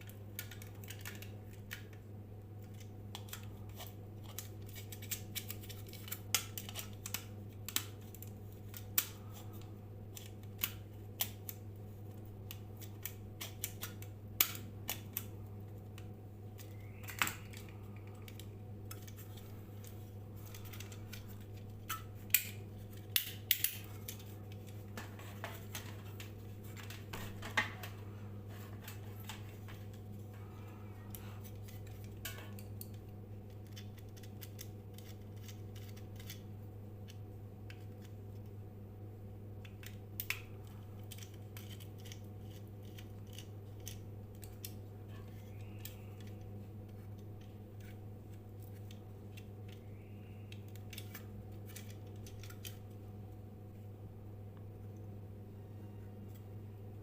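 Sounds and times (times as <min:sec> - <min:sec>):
low electrical hum: 0:00.0 - 0:57.0.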